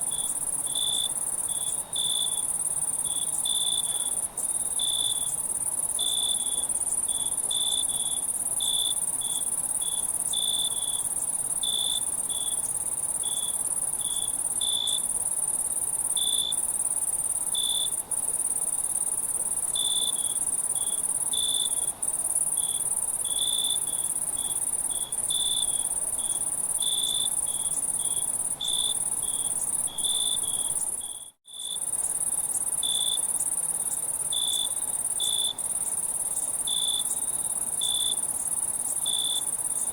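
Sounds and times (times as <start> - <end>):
lower cricket chirps: 0.0 - 39.9
crickets trilling: 0.1 - 39.9.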